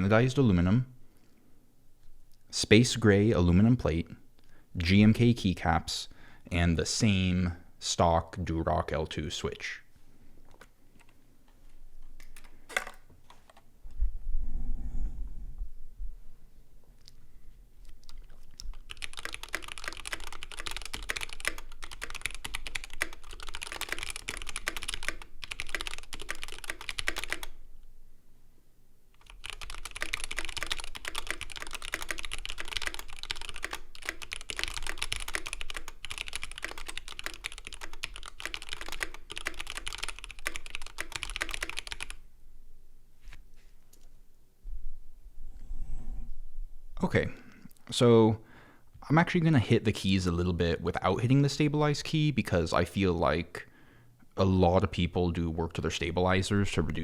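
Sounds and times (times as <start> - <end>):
mechanical keyboard typing: 18.0 - 27.6, 29.2 - 42.2.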